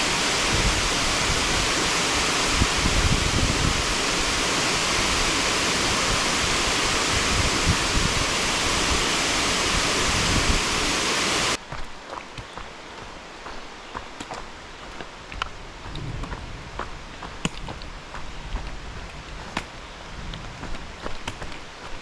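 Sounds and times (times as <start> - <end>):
rushing water: 0.0 - 15.9.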